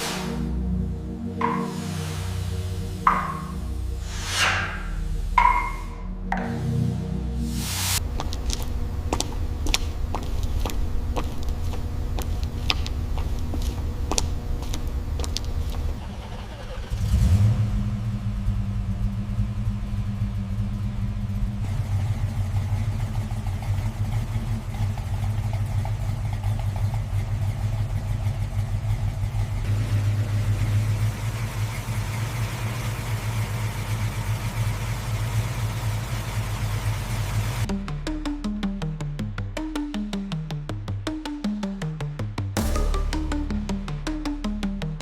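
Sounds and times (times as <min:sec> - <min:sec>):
engine revving and idling: 0:00.0 - 0:38.9
car engine cranking: 0:08.0 - 0:37.6.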